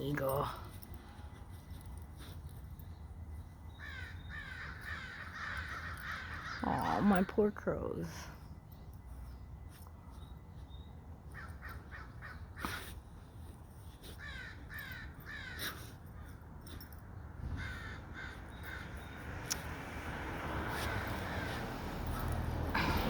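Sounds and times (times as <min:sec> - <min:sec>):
crows cawing: 0:03.8 - 0:06.9, 0:11.3 - 0:12.8, 0:14.2 - 0:16.3, 0:17.4 - 0:19.1.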